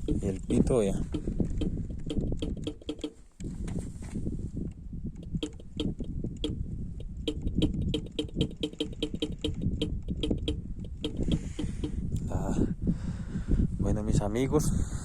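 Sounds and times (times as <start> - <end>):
rapid electrical clicking of relay: 0.0 - 3.2, 5.2 - 12.0.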